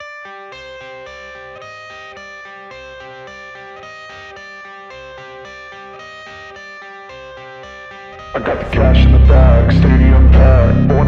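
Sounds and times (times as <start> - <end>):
plucked guitar riff: 7.1 - 11.0.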